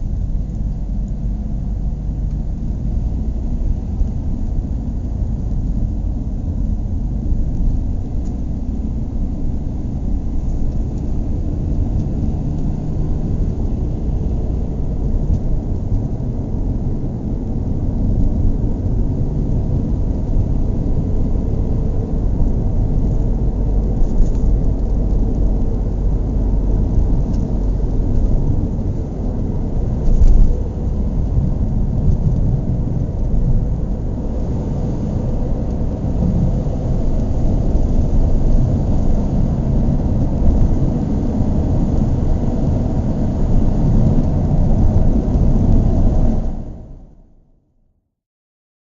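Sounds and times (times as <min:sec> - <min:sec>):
car engine rumbling: 0:00.0 - 0:47.4.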